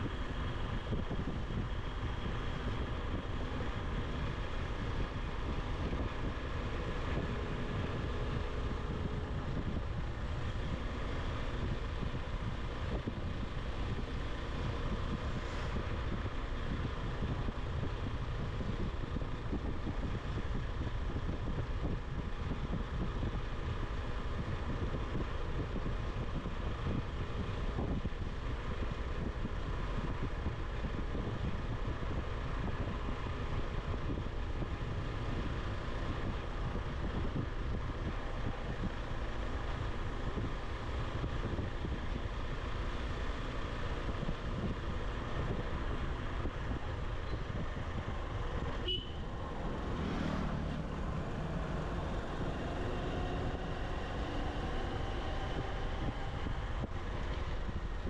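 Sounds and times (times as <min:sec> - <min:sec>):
wind rushing over microphone: 0:00.0 - 0:58.0
motorcycle engine running: 0:11.6 - 0:58.0.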